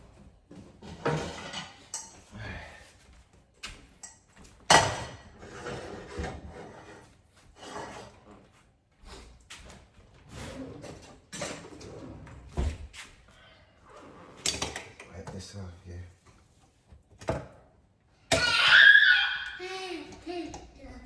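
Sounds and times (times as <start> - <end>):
pots and pans clattering: 0.6 - 2.3, 4.0 - 7.0, 10.8 - 11.9.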